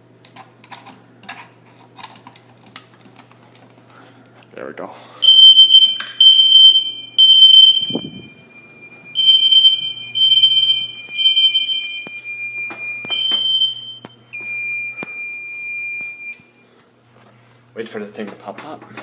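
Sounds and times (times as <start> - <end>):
fire alarm beeps: 5.2 - 16.7
steady high alarm tone: 5.2 - 16.7.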